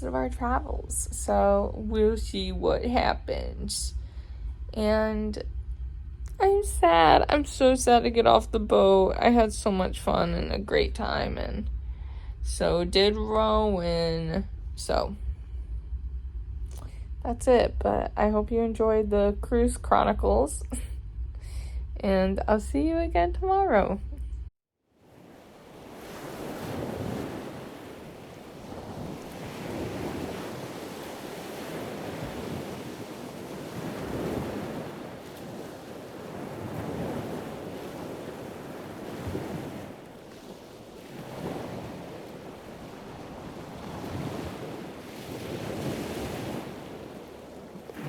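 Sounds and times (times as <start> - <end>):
sea waves washing: 25.0 - 48.0
wind on microphone: 25.1 - 48.0.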